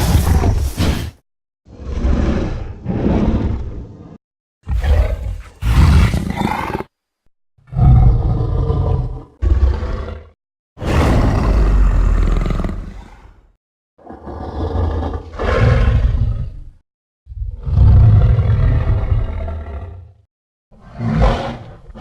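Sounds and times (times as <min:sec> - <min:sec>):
creature roaring: 0:04.7 - 0:06.9, 0:07.7 - 0:13.4, 0:17.5 - 0:20.1, 0:20.8 - 0:22.0.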